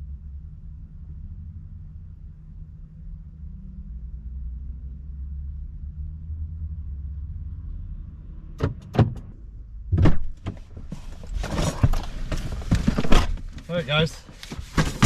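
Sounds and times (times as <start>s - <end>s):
vehicle engine rumbling: 0.0s - 15.0s
heavy thunk: 9.9s - 10.6s
rustling and knocking: 10.0s - 15.0s.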